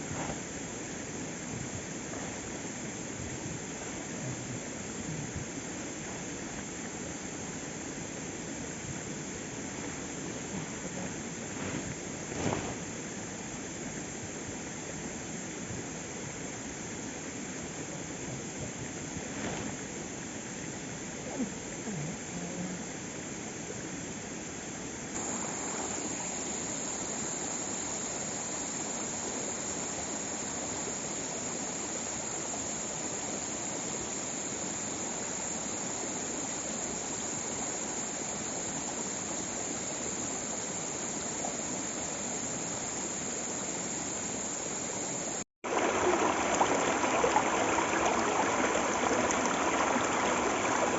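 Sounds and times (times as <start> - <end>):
waterfall rushing: 45.6 - 50.9.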